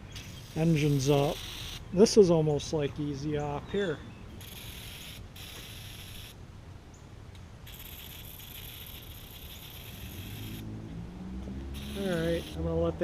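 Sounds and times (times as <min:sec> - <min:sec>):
spray can hissing: 0:04.4 - 0:06.3, 0:07.6 - 0:10.7, 0:11.7 - 0:12.6.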